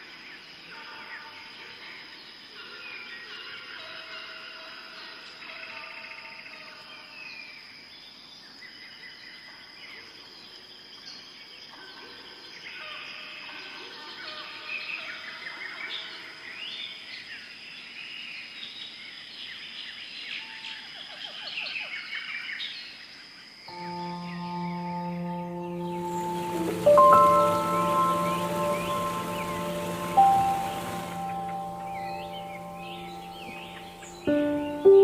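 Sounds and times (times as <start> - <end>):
steady high-pitched tone: 23.7 - 35.0
birds chirping and trilling: 23.8 - 35.0.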